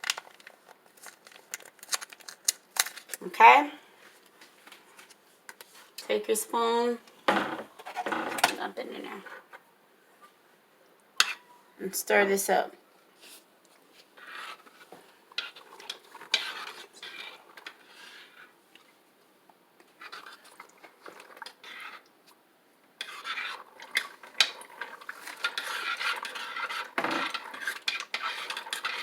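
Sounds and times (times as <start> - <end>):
spoon scraping a pot: 11.2 - 11.6, 14.2 - 18.6, 19.9 - 22.1, 23.0 - 29.0.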